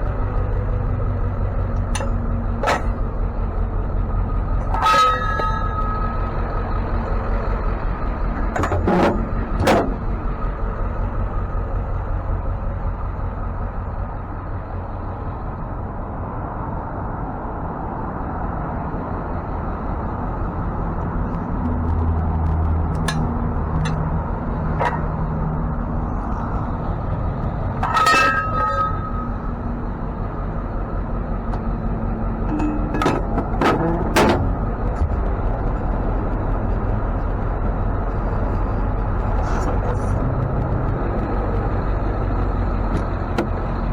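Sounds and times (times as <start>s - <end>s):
truck engine rumbling: 0.0s - 43.9s
short high squeal: 4.7s - 6.5s, 27.8s - 29.7s.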